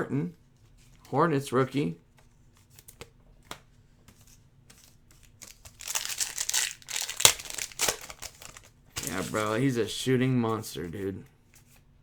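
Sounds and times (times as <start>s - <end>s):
wrapper crinkling and tearing: 5.3s - 9.6s
cards clicking: 5.4s - 9.5s.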